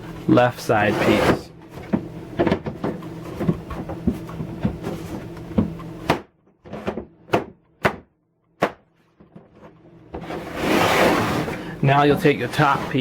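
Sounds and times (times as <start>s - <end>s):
plastic scraping on plastic: 10.2s - 13.0s.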